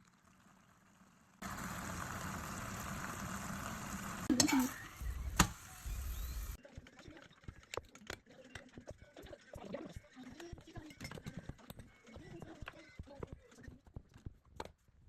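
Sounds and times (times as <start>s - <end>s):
food sizzling in a pot: 1.4s - 6.6s.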